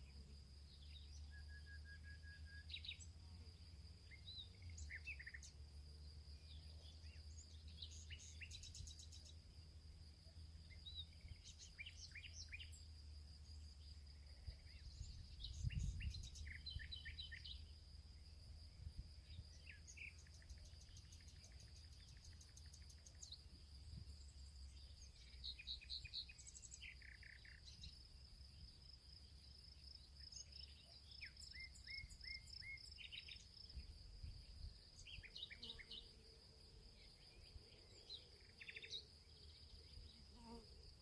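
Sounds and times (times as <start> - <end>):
songbirds chirping and trilling: 0.0 - 41.0
high insect buzz: 35.0 - 37.3, 39.9 - 41.0.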